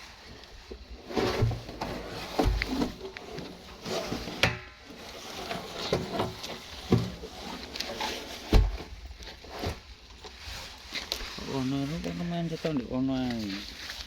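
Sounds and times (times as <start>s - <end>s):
faint rustling: 0.0s - 14.0s
objects knocking and thudding: 0.7s - 9.9s.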